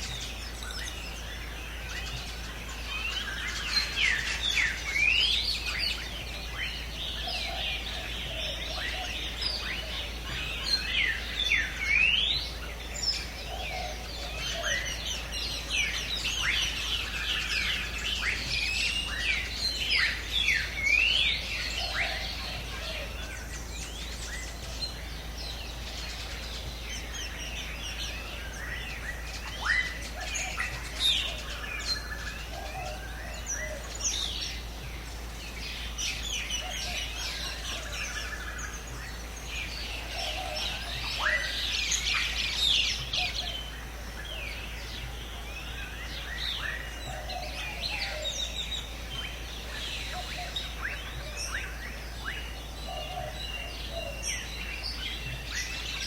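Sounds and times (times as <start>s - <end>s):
birds chirping in a forest: 0.0s - 56.0s
low soft bird calls: 0.0s - 56.0s.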